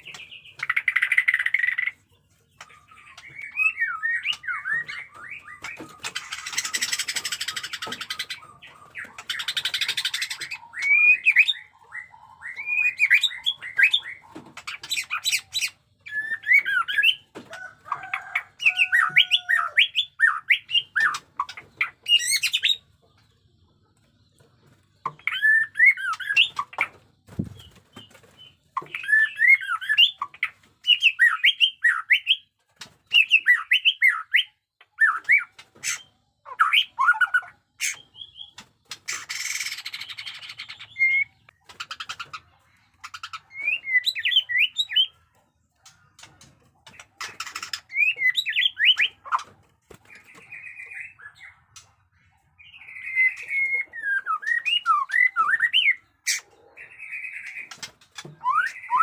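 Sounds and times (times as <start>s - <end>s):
bird singing whistled notes: 39.6s - 41.4s.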